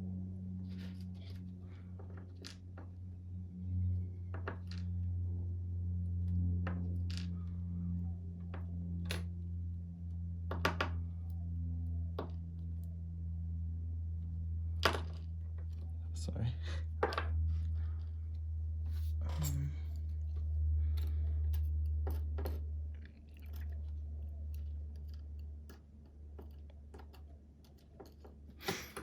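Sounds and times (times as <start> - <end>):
steady low hum: 0.0 - 29.0
small metal clicks and taps: 20.9 - 29.0.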